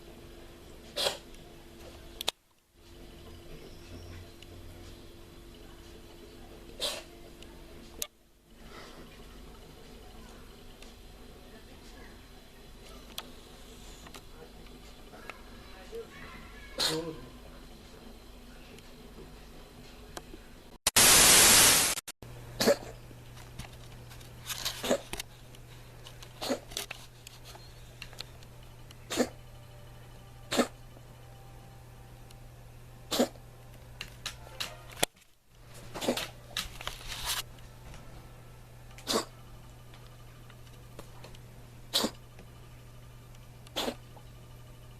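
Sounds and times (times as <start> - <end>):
loud hiss: 20.9 - 22.1
cat coughing: 29.1 - 29.4, 30.5 - 30.7, 33.1 - 33.4, 39.0 - 39.3, 41.9 - 42.2.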